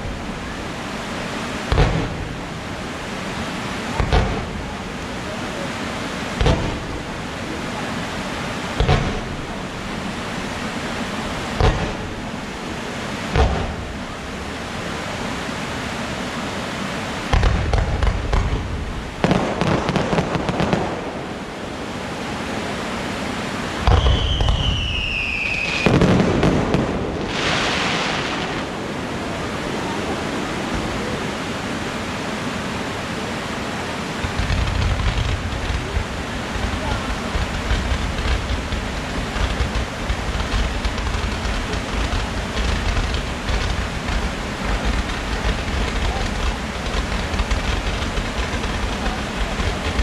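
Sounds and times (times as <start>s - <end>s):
fireworks bangs: 0.0s - 21.6s, 22.9s - 50.0s
fireworks crackling: 0.0s - 50.0s
steady rushing noise: 0.0s - 50.0s
whistling firework shell: 23.8s - 28.8s.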